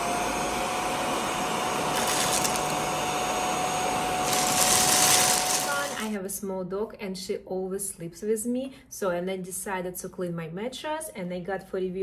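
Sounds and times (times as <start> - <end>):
handheld vacuum cleaner running: 0.0 - 6.2.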